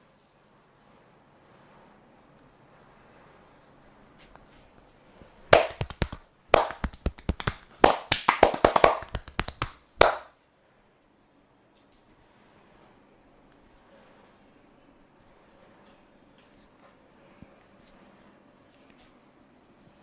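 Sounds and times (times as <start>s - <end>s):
hands slapping on body: 5.6s - 10.3s.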